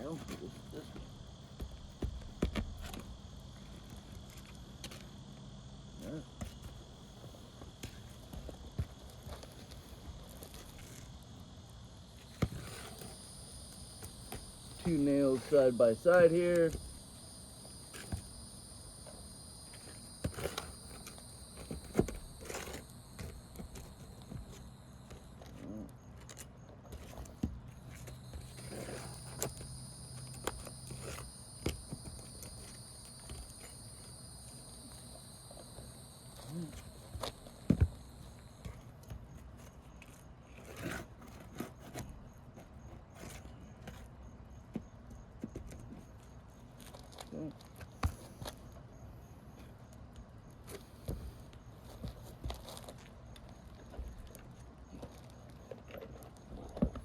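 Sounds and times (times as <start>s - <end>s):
metal pry tool scraping shingles: 40.5s - 42.1s.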